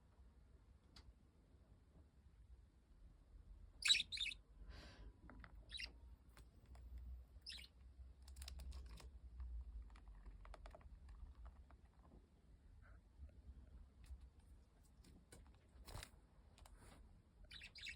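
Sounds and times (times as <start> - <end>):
budgie chirping: 3.8 - 4.4, 5.6 - 6.0, 7.4 - 7.8, 17.5 - 17.9.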